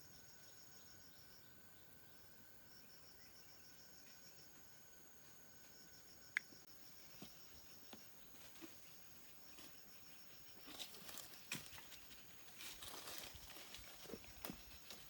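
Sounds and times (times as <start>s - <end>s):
crackling and rustling: 10.6s - 15.0s.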